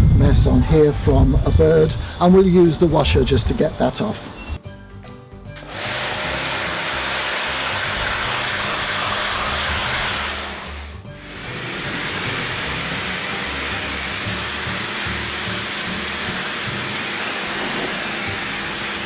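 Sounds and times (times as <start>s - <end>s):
pressure washer spraying: 5.6s - 19.0s.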